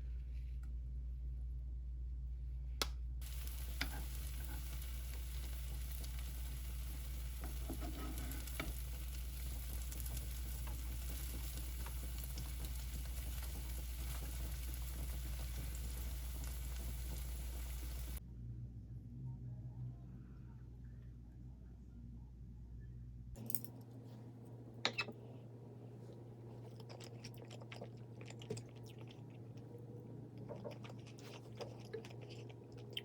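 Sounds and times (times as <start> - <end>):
food sizzling in a pan: 3.2 - 18.2.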